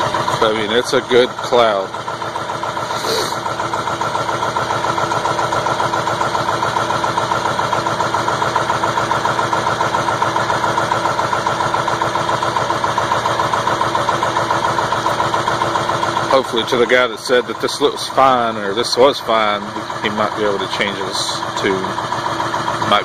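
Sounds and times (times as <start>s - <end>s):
diesel engine idling: 0.0s - 23.0s.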